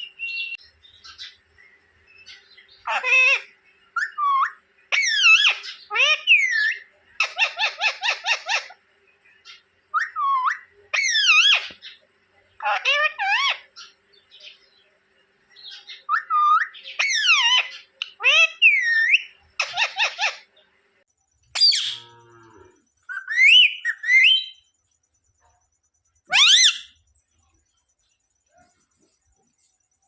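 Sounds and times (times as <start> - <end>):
parrot screeching: 2.8 - 8.8, 10.0 - 11.8, 12.6 - 13.7, 16.1 - 20.4, 21.6 - 22.0, 26.3 - 27.0
parrot chirping and whistling: 2.9 - 8.8, 9.9 - 11.7, 16.1 - 20.4, 21.6 - 22.0, 23.1 - 24.6, 26.3 - 27.0.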